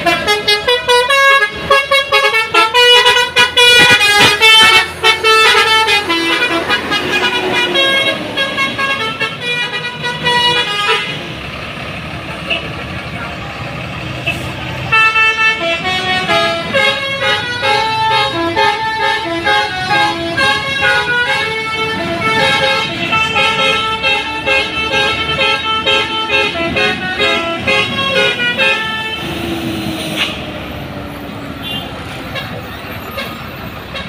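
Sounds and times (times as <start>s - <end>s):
musical air horn melody: 0.0s - 11.2s, 14.9s - 30.5s.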